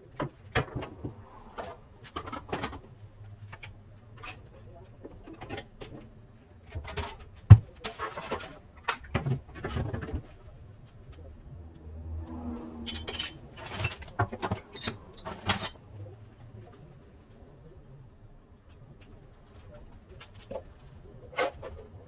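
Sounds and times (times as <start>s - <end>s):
objects knocking and rattling: 6.7s - 10.5s, 12.2s - 16.4s.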